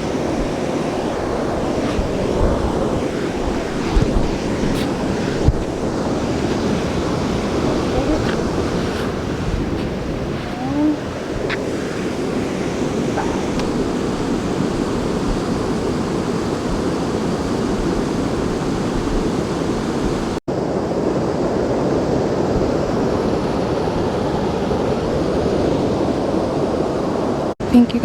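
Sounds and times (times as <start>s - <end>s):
creek water rushing: 0.0s - 20.7s.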